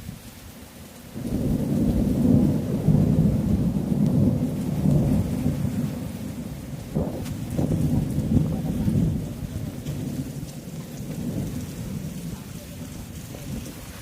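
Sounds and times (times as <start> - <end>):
heavy rain hissing: 0.0 - 14.0
thunder rumbling: 1.1 - 14.0.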